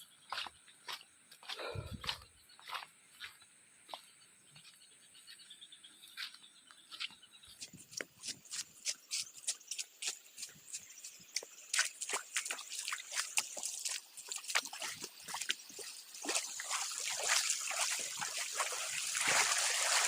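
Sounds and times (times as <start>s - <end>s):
water splashing and dripping: 9.7s - 20.0s.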